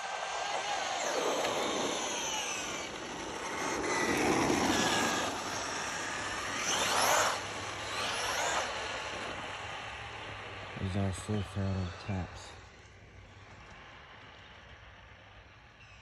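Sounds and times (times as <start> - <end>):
rc truck electric motor whining: 0.0 - 10.6.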